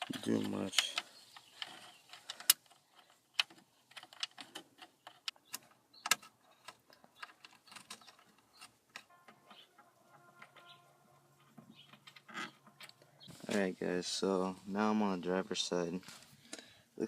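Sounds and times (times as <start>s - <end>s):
hand tools clicking on screws: 0.0s - 9.1s.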